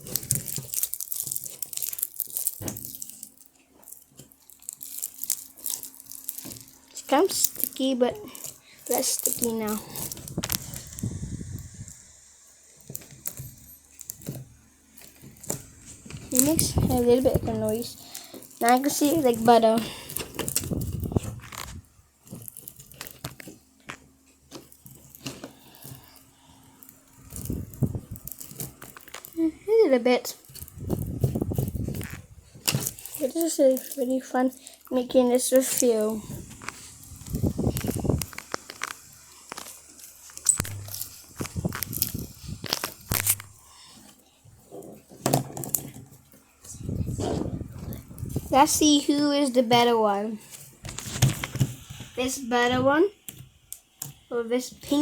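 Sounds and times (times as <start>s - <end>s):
slime squished by hand: 0.0s - 12.1s, 30.4s - 43.8s.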